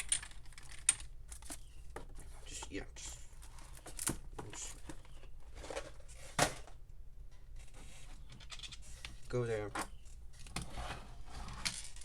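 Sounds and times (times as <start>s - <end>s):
small objects clicking and rustling: 0.0s - 2.7s, 11.6s - 12.0s.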